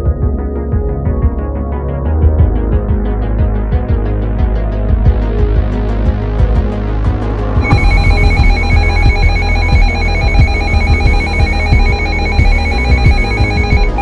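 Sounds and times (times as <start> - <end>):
low pulsing background: 0.0 - 14.0
electronic alert tone warbling: 7.6 - 14.0.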